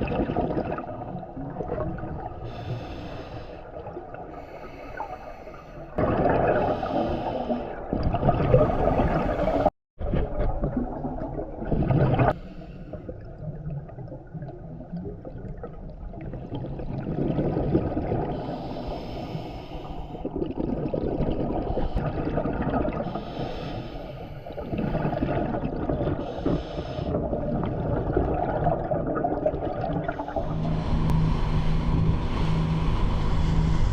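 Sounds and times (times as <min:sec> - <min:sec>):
bubbles gurgling: 0:00.0 - 0:02.6, 0:06.0 - 0:12.4, 0:13.0 - 0:18.6, 0:20.1 - 0:23.2, 0:24.5 - 0:30.7.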